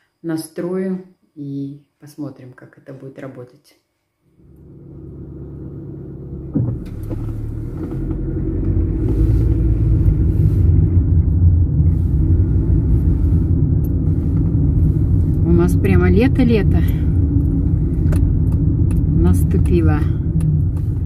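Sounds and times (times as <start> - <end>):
car engine and road rumble: 4.4 - 21.0.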